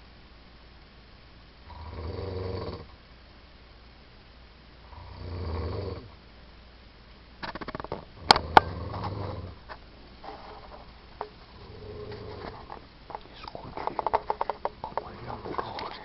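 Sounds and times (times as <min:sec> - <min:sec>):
person snoring: 0:04.9 - 0:06.1, 0:08.4 - 0:09.6
sharp loud clicks: 0:07.4 - 0:09.1.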